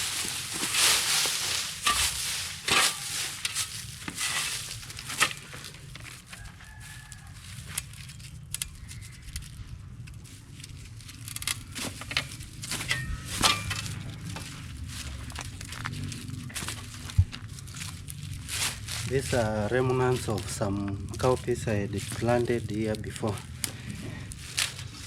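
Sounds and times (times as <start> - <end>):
dry stalks crackling and crunching: 0.0 - 25.0.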